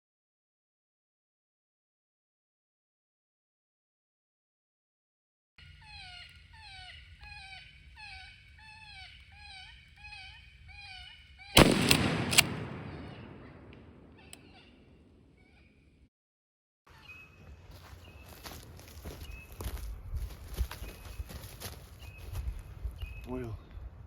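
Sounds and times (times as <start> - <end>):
shotgun shots echoing: 11.6 - 14.8.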